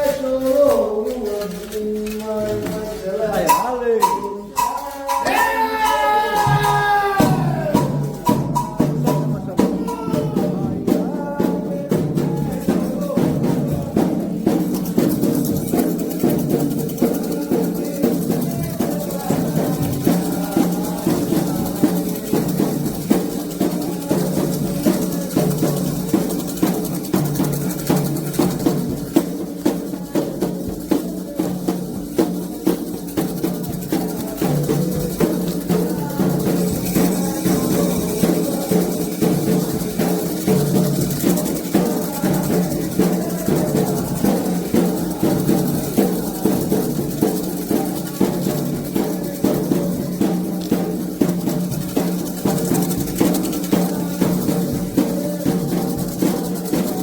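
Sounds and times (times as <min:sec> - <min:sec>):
hand drums playing a rhythm: 0:00.0 - 0:57.0
struck bell keeping time: 0:03.4 - 0:10.5.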